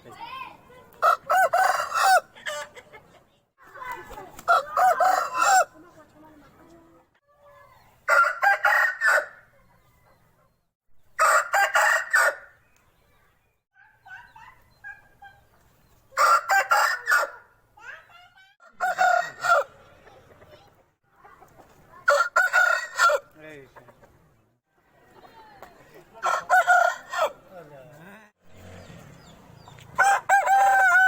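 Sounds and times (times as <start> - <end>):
roosters crowing: 1.0 - 2.7, 4.4 - 5.8, 8.1 - 10.0, 11.2 - 12.6, 16.1 - 17.4, 18.6 - 19.8, 22.0 - 23.3, 26.2 - 27.5, 28.5 - 31.0.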